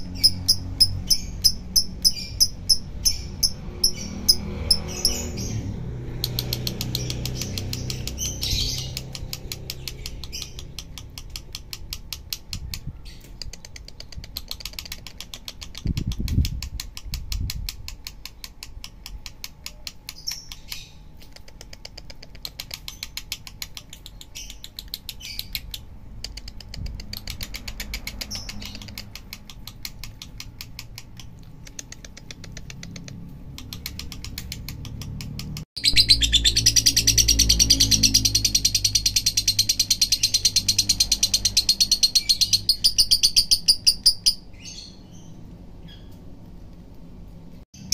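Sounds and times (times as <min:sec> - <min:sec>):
bird high chirps: 0:00.0 - 0:11.4, 0:35.8 - 0:46.2
lovebird clicking chatter: 0:00.0 - 0:44.8.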